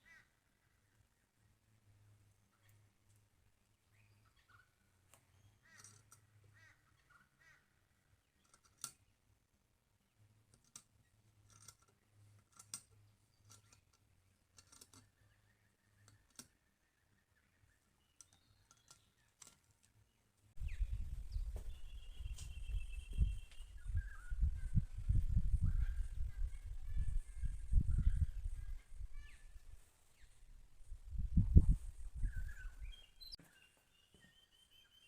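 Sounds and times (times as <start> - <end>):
short bird chirps: 20.6 - 30.4, 32.2 - 35.0.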